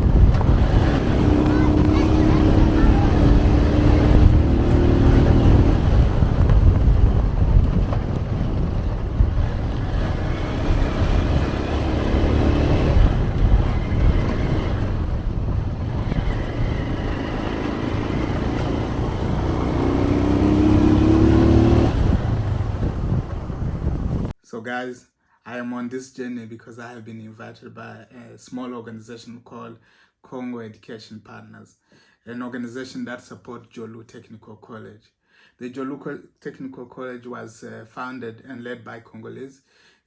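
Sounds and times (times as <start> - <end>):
motorbike engine running: 0.0 - 24.3
wind and road noise: 0.0 - 24.4.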